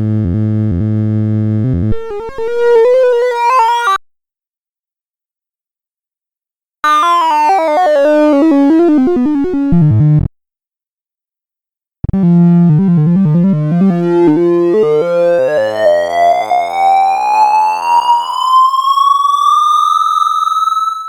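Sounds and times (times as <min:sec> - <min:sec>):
electronic tone rising in pitch: 0:12.1 - 0:21.0.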